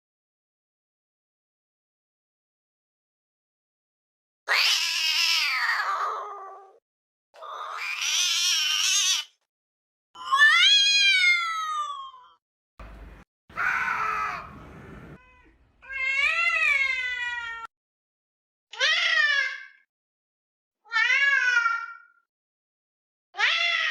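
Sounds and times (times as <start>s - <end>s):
cats yowling: 4.5s - 6.8s, 7.4s - 9.3s, 10.2s - 12.4s, 13.5s - 17.7s, 20.9s - 22.1s, 23.4s - 23.9s.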